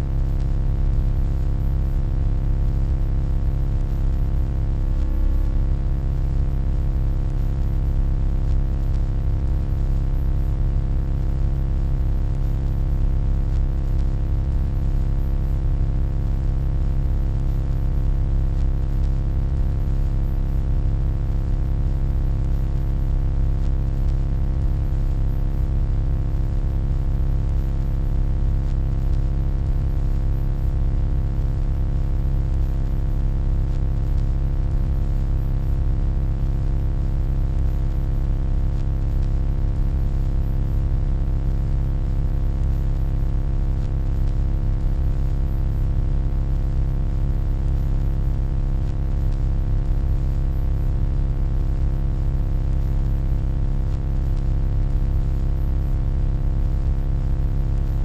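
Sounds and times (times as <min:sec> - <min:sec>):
deep electronic hum: 0:03.9 - 0:09.1.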